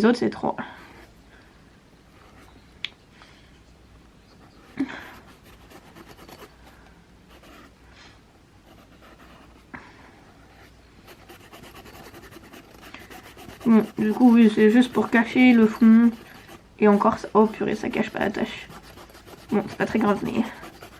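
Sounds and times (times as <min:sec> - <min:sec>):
marker rubbing over surface: 0:05.3 - 0:06.5, 0:08.7 - 0:09.6, 0:11.1 - 0:20.9.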